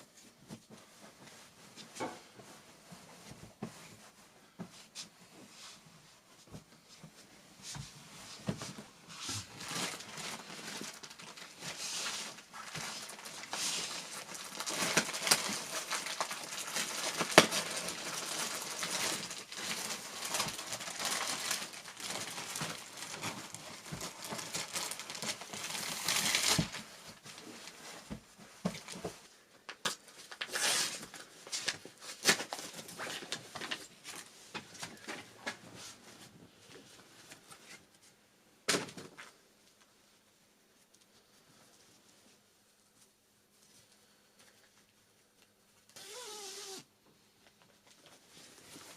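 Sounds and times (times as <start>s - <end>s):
packaging crinkling and rustling: 8.5s - 35.8s.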